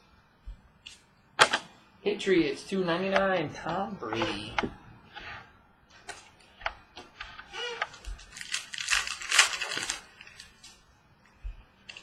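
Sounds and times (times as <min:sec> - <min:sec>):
trading cards clicking and rustling: 0:07.0 - 0:10.8.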